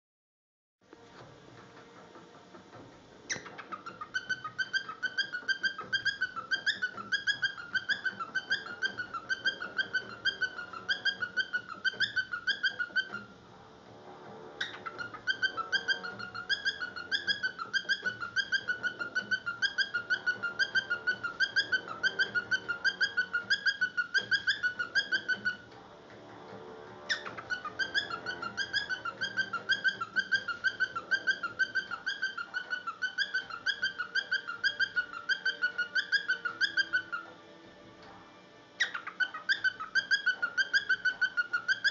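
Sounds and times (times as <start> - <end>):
bird pulsing warbled whistle: 14.6 - 25.6, 27.1 - 37.3.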